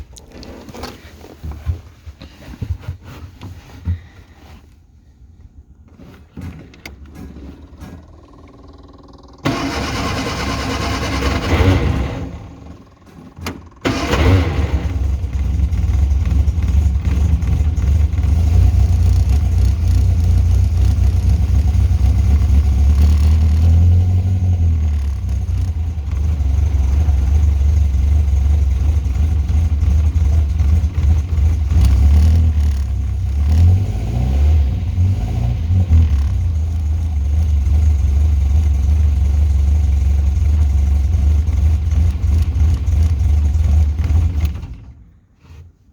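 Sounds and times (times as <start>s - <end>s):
car starter cranking: 5.8s - 18.4s
car engine idling: 6.6s - 33.4s, 35.6s - 45.4s.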